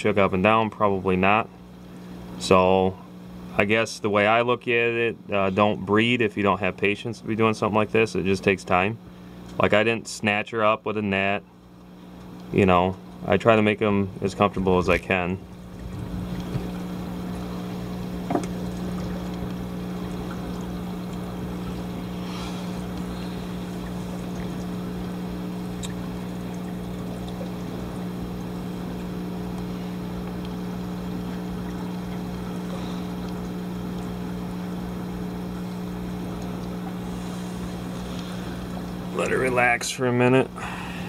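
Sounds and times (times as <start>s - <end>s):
aquarium equipment humming: 0.0s - 41.0s
faint watery hiss: 36.9s - 39.8s.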